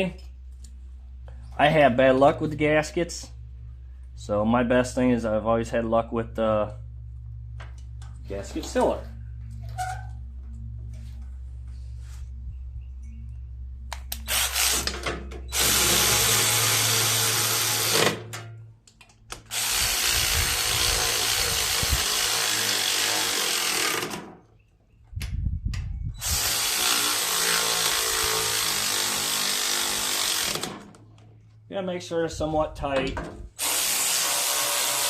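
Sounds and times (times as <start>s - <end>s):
cordless power drill running: 14.1s - 18.3s, 19.4s - 24.3s, 26.2s - 30.9s, 33.6s - 35.0s.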